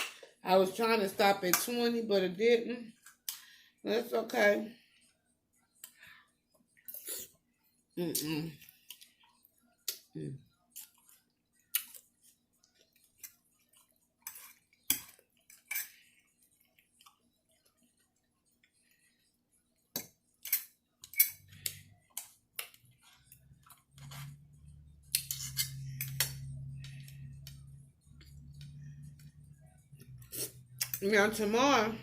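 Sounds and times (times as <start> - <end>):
low steady hum: 15.0 - 32.0.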